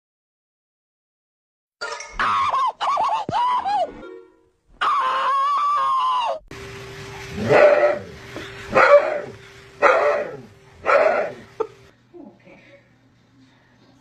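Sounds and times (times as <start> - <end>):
steady low hum: 6.5 - 14.0
dog barking: 7.3 - 11.7.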